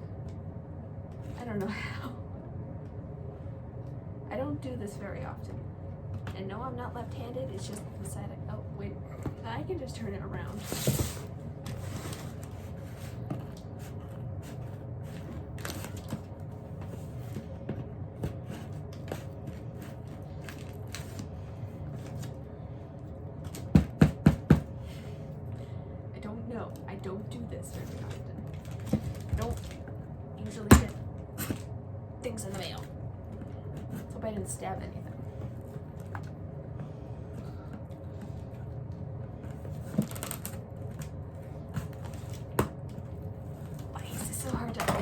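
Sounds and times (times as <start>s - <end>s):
steady low hum: 0.0s - 45.0s
package scraping and rustling: 10.6s - 17.6s, 18.2s - 22.4s, 39.5s - 42.6s
sharp knock on cardboard: 23.7s - 24.7s
packaging crackle: 28.5s - 29.9s.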